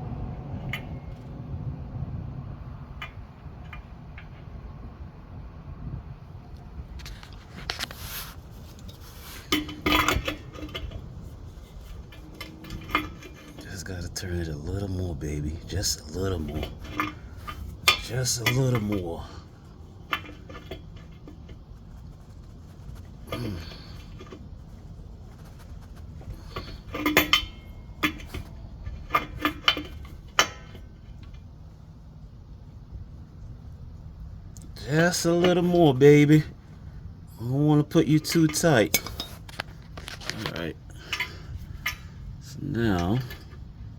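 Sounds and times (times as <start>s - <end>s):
metal tool clinking and scraping: 7.0s - 31.4s, 37.8s - 43.7s.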